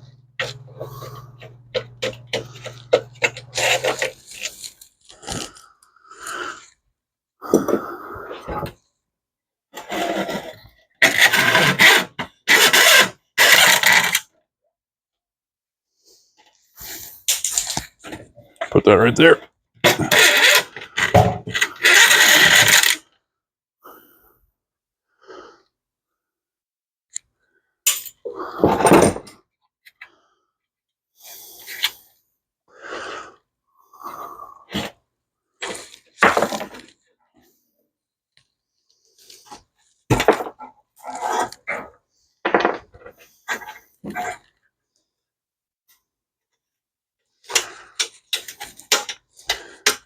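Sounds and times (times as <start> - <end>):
metal parts clicking and scraping: 0.4 - 5.5, 17.3 - 17.9, 20.0 - 23.0
small metal parts clattering: 17.3 - 17.9.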